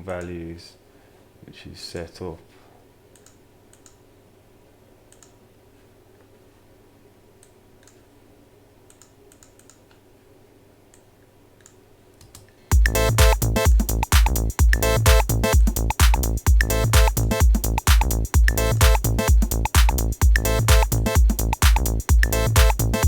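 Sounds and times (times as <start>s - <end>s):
keyboard clicks: 3.1s - 4.0s, 5.1s - 5.4s, 8.9s - 10.0s
electronic dance music: 12.7s - 23.0s.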